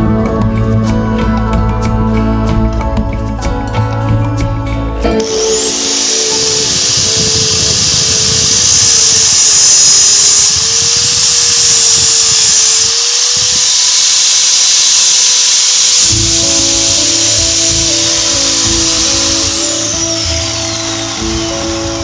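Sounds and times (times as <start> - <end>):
handheld power tool running: 4.4 - 22.0.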